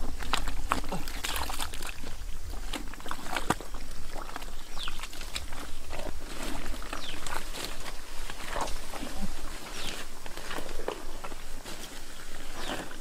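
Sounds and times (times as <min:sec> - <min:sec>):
wet mud slaps and clicks: 0:00.0 - 0:07.4.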